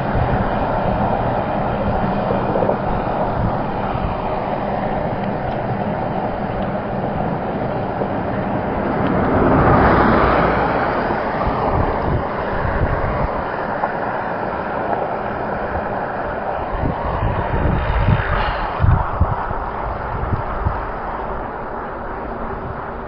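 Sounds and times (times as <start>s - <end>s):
low buffeting thumps: 0.0s - 23.0s
wind rushing over microphone: 0.0s - 23.0s.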